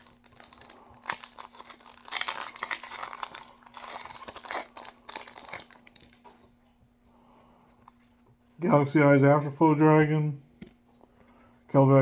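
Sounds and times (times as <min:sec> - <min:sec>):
foil wrapper crinkling and tearing: 0:00.0 - 0:06.4.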